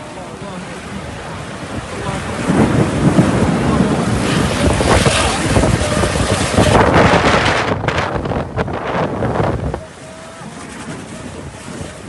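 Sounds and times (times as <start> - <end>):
heavy rain: 0.0 - 12.0
wind gusting across microphone: 0.0 - 12.0.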